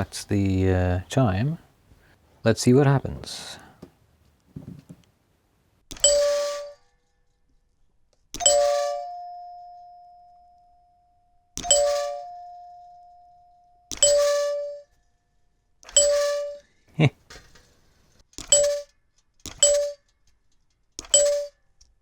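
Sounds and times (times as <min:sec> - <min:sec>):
door chime ding with tinny buzz: 0:06.0 - 0:06.8, 0:08.4 - 0:15.0, 0:15.9 - 0:16.7, 0:18.5 - 0:18.9, 0:19.6 - 0:20.0, 0:21.1 - 0:21.6
higher ringing chime note: 0:08.4 - 0:10.7, 0:11.6 - 0:14.8.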